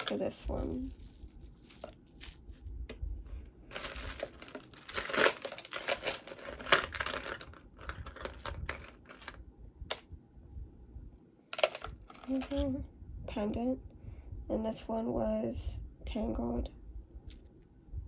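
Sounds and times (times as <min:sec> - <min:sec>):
crinkling and rustling: 0:00.0 - 0:02.7, 0:03.7 - 0:10.0, 0:11.5 - 0:12.8.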